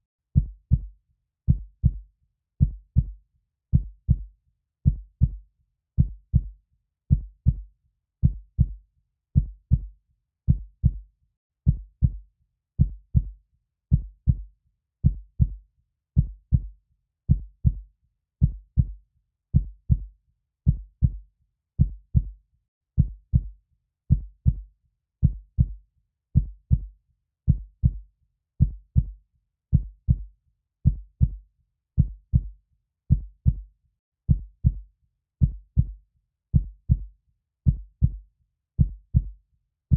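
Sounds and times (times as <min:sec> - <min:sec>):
heartbeat double thumps: 0:01.5 - 0:02.0, 0:02.6 - 0:03.1, 0:07.1 - 0:07.6, 0:08.2 - 0:08.8, 0:09.4 - 0:09.9, 0:10.5 - 0:11.0, 0:11.7 - 0:12.2, 0:12.8 - 0:14.4, 0:15.0 - 0:15.6, 0:16.2 - 0:16.7, 0:18.4 - 0:19.0, 0:19.6 - 0:20.1, 0:20.7 - 0:21.2, 0:21.8 - 0:22.3, 0:23.0 - 0:23.5, 0:24.1 - 0:24.6, 0:25.2 - 0:25.8, 0:26.4 - 0:26.9, 0:27.5 - 0:28.0, 0:28.6 - 0:30.3, 0:30.9 - 0:31.4, 0:32.0 - 0:32.5, 0:33.1 - 0:33.7, 0:34.3 - 0:34.8, 0:35.4 - 0:36.0, 0:36.6 - 0:37.1, 0:37.7 - 0:38.2, 0:38.8 - 0:39.4.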